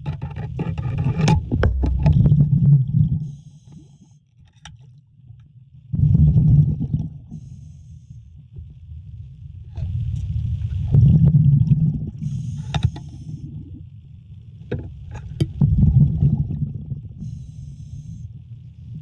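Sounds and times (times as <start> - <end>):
sharp clicks and knocks: 0.0 - 2.3, 14.7 - 15.6
exhaled air bubbling underwater: 0.6 - 4.2, 4.9 - 19.0
breathing regulator hiss: 3.2 - 4.2, 7.2 - 8.4, 12.2 - 13.8, 17.2 - 18.6.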